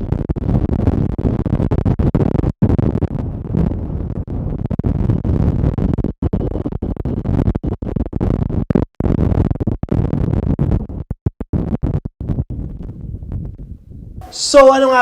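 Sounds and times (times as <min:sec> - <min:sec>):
wind buffeting microphone: 0:00.0 - 0:14.3.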